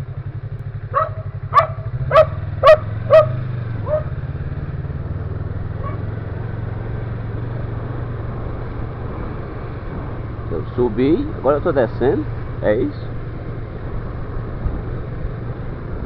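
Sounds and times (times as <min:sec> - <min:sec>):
vehicle engine running: 0:00.0 - 0:16.0
dog barking: 0:00.9 - 0:04.2, 0:05.8 - 0:06.1.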